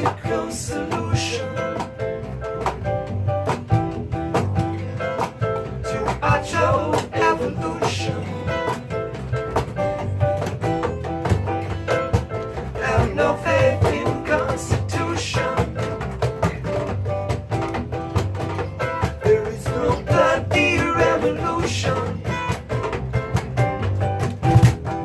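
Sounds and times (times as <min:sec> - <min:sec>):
person singing: 0:00.0 - 0:01.9, 0:05.9 - 0:08.8, 0:12.8 - 0:16.1, 0:19.2 - 0:22.7
drums and percussion: 0:00.0 - 0:25.0
strummed guitar: 0:00.0 - 0:25.0.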